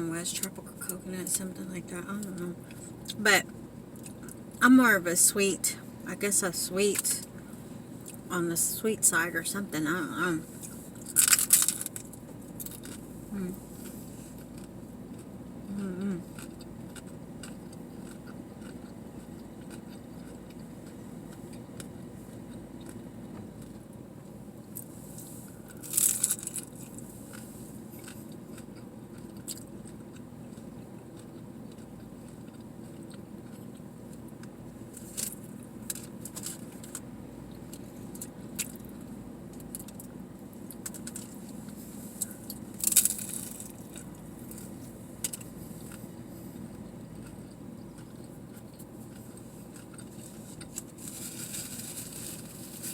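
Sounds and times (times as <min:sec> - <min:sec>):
steady low hum: 0:00.0 - 0:52.9
chewing noises: 0:10.6 - 0:23.9, 0:24.7 - 0:52.2.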